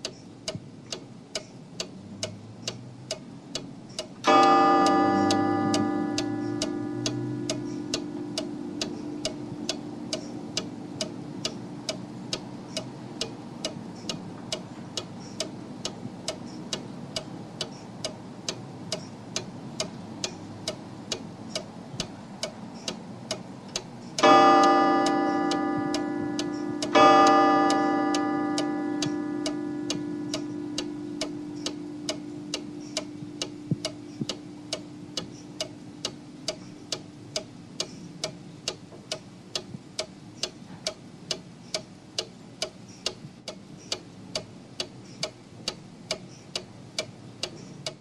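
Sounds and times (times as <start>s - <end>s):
wall clock ticking: 0.0s - 48.0s
clock chime strokes: 4.3s - 10.4s, 24.2s - 34.1s.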